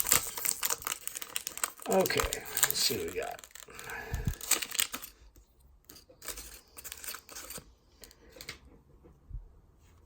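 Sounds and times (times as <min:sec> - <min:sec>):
cards rustling and flicking: 0:00.0 - 0:05.1.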